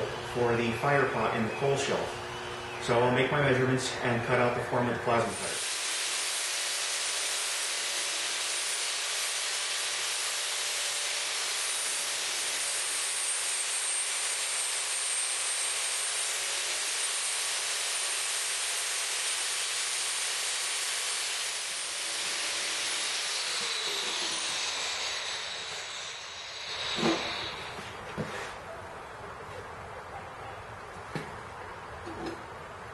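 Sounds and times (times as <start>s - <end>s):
plasma cutter hissing: 5.3s - 10.3s, 22.4s - 27.8s.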